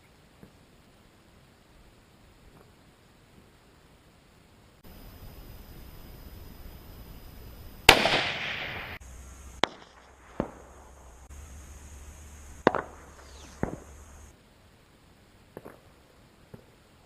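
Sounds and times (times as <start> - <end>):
rifle shots with rolling echo: 7.8 - 11.2, 12.6 - 14.0.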